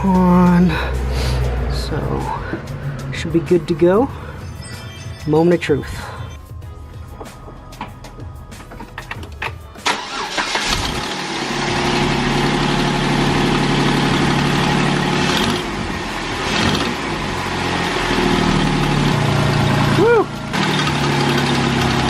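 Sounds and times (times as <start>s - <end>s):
car engine starting and idling: 0.0s - 5.2s, 7.4s - 22.0s.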